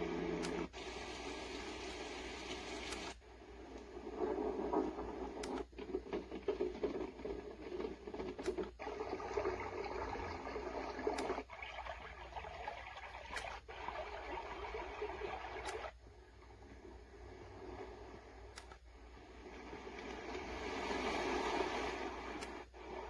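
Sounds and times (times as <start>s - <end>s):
white noise machine sounds: 0.0s - 5.7s.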